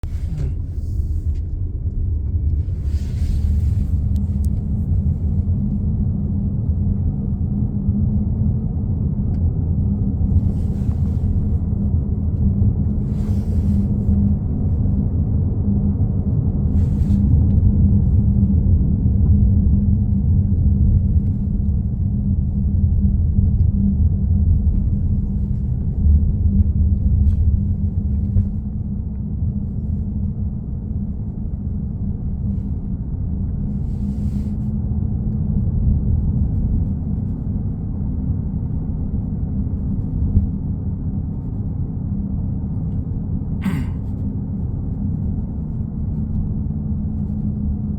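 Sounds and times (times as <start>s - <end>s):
car interior low hum and rumble: 0.0s - 47.9s.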